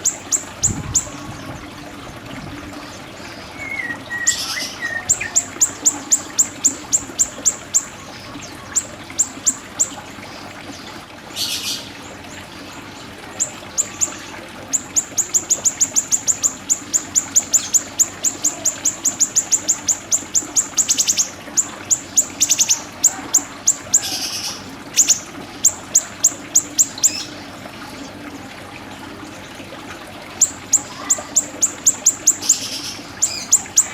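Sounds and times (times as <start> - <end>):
bird high sharp chirps: 30.4 - 33.9.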